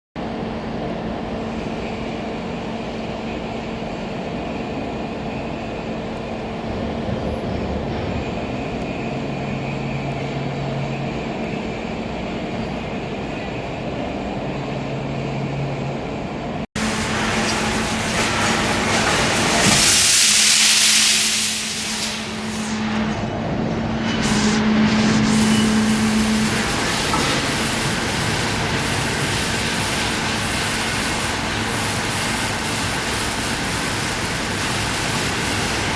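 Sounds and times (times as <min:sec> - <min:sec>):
baler machine humming: 0:21.4 - 0:32.2.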